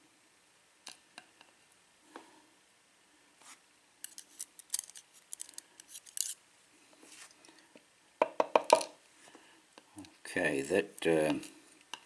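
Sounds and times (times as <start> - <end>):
metal lock pins and tweezers clicking: 4.0 - 6.4.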